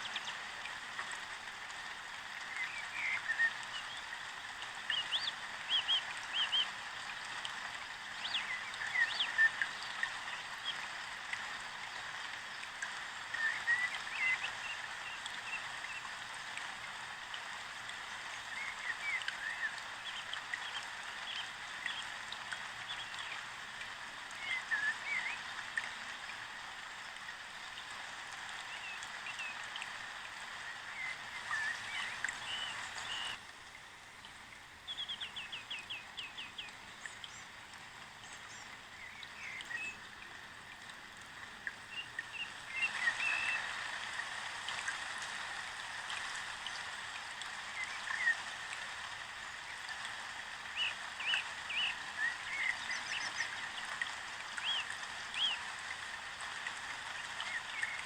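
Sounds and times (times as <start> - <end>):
steady rush like flowing water: 0.0 - 58.0
small birds chirping: 30.8 - 33.4.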